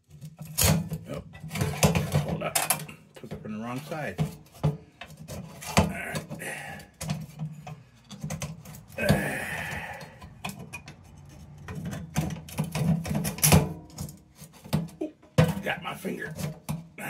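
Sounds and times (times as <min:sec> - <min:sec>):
scraping rub: 0:10.9 - 0:12.1.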